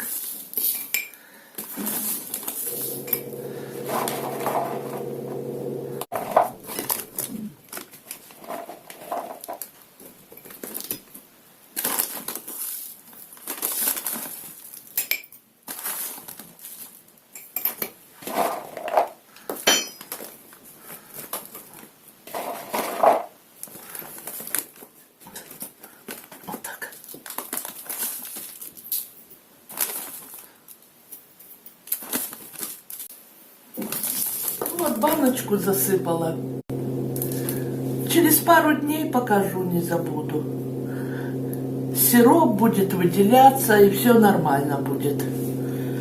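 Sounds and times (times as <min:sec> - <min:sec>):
steady low hum: 0:02.6 - 0:07.2, 0:34.4 - 0:46.0.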